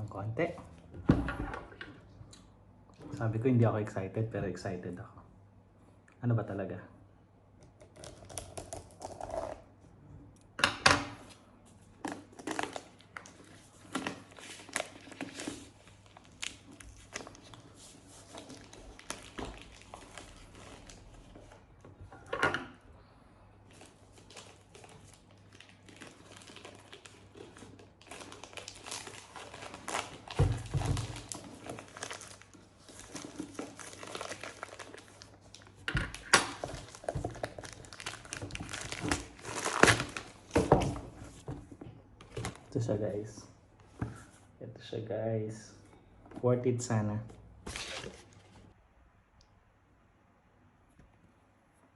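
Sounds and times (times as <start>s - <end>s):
plastic packaging crinkling: 12.1s - 21.4s, 23.7s - 41.4s.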